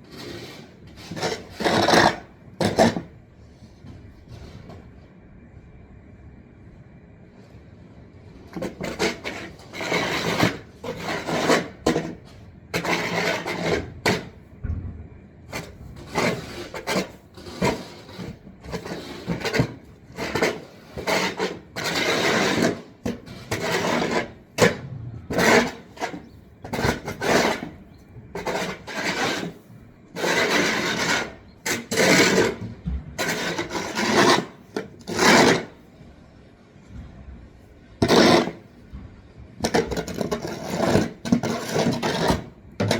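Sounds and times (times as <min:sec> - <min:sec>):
rough rasping strokes: 0:28.4 - 0:32.6.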